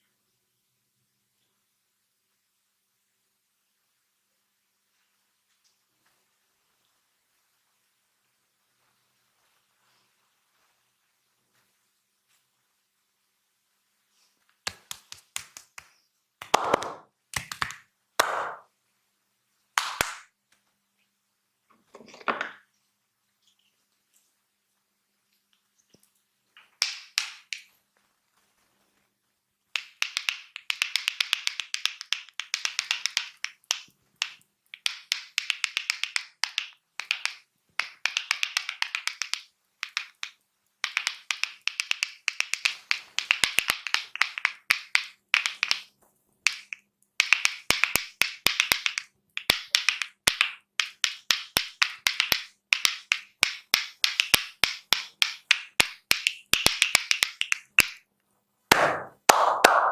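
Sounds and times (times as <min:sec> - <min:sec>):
hands tapping in percussive massage: 0:14.6 - 0:18.7, 0:19.8 - 0:20.3, 0:26.6 - 0:27.7, 0:29.7 - 0:58.1, 0:58.7 - 0:59.9.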